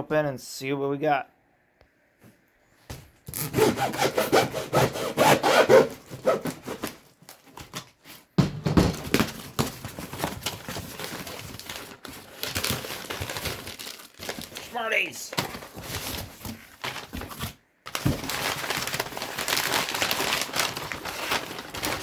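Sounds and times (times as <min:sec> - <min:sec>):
blade sawing through cardboard: 0:03.4 - 0:07.0.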